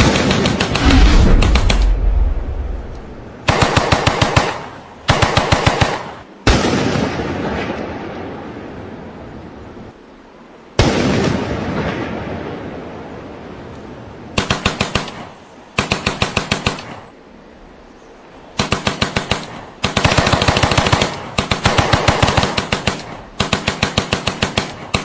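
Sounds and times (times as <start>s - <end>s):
explosion rumble: 0.8s - 3.4s
automatic gunfire bursts: 3.4s - 6.6s, 18.6s - 25.0s.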